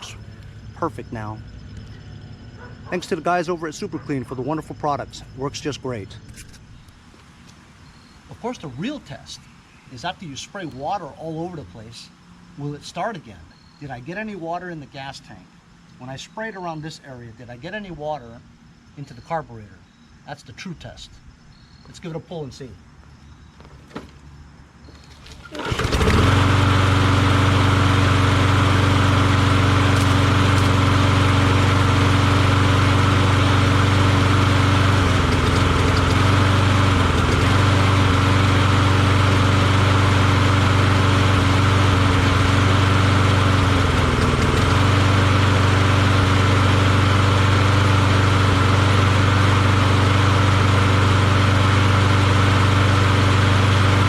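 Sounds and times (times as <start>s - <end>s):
lawn mower engine running: 0.0s - 10.5s, 24.9s - 54.0s
lawn mower pull start: 25.0s - 54.0s.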